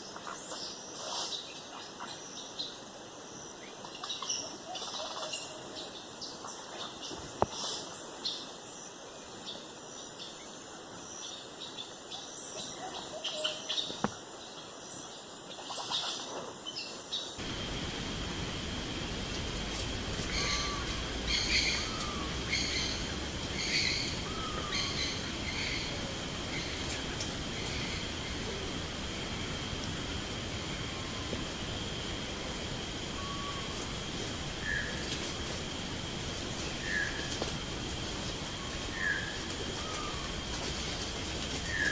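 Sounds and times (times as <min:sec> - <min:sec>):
outdoor ambience: 0:00.0 - 0:41.9
hiss: 0:07.3 - 0:08.1, 0:17.4 - 0:41.9
birds chirping and calling: 0:17.4 - 0:35.8, 0:36.7 - 0:41.9
steady high tone: 0:17.4 - 0:41.9.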